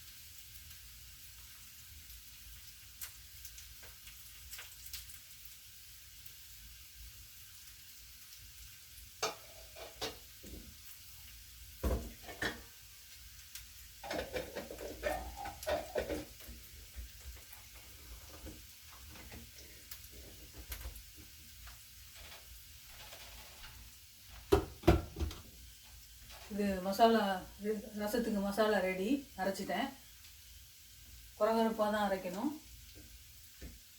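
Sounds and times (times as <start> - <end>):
beans sizzling in a pan: 0.0 - 33.9
utensil scraping a pan: 9.2 - 10.8, 12.0 - 12.7, 14.0 - 19.5.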